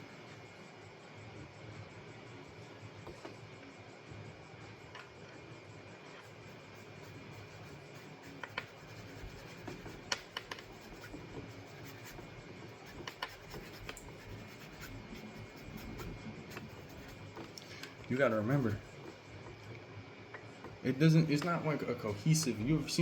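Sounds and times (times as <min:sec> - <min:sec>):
brush scratching on paper: 0:06.1 - 0:19.4.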